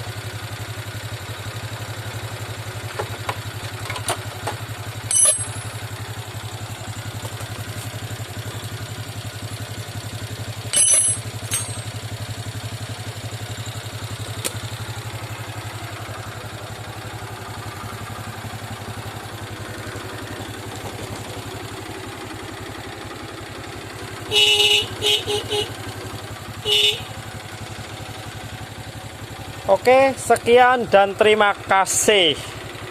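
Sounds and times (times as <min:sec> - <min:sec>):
motorcycle engine idling: 0:00.0 - 0:32.9
electric horn beeps: 0:24.3 - 0:25.8, 0:26.6 - 0:27.1.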